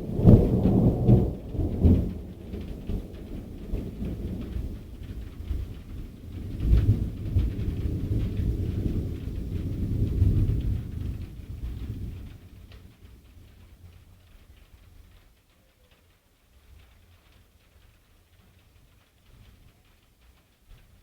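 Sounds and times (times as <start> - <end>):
thunder rumbling: 0.0 - 13.6.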